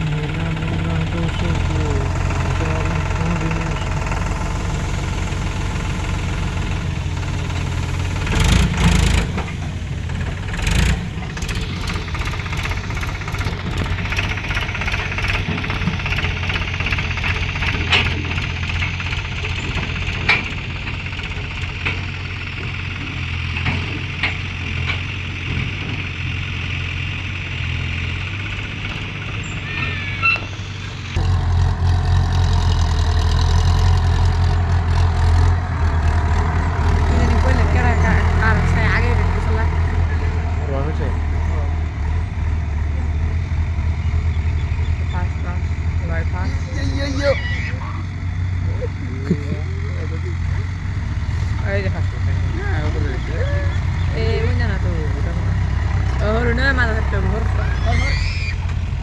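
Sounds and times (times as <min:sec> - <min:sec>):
diesel engine droning: 0:00.0 - 0:59.0
sharp knocks and clanks: 0:06.4 - 0:26.0.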